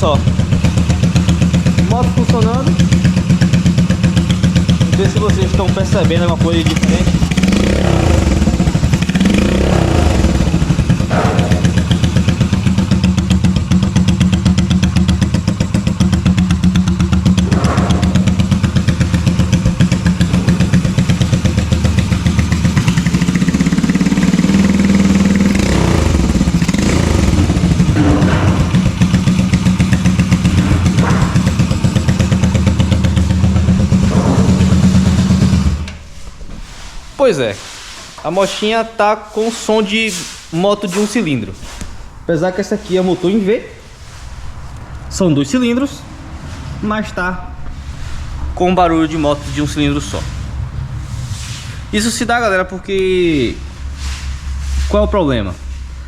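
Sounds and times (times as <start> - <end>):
motorcycle engine running: 0.0 - 36.1.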